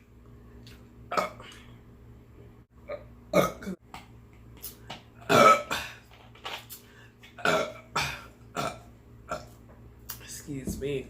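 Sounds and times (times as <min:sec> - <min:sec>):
person burping: 0:01.1 - 0:01.7, 0:02.8 - 0:03.8, 0:05.2 - 0:06.0, 0:07.3 - 0:09.6.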